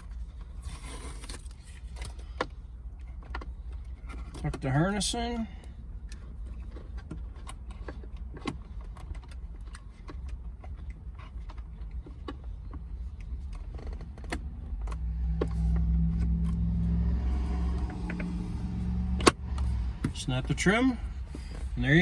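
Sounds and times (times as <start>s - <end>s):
low hum: 12.6s - 22.0s
low rumble: 14.3s - 22.0s.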